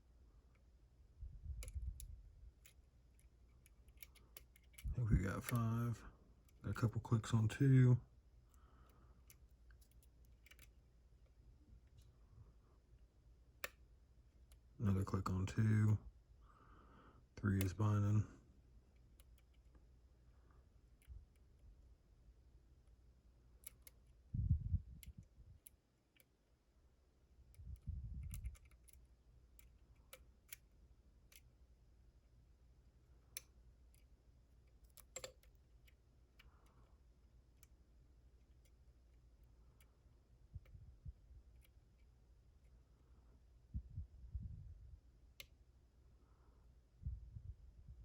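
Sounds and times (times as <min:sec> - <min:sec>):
faint metallic lock clicks: 0:01.6 - 0:05.7, 0:33.3 - 0:36.8.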